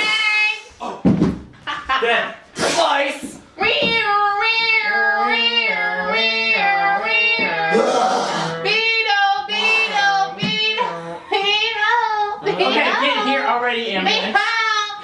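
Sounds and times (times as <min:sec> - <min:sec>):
person singing wordless tune: 0:03.6 - 0:11.4.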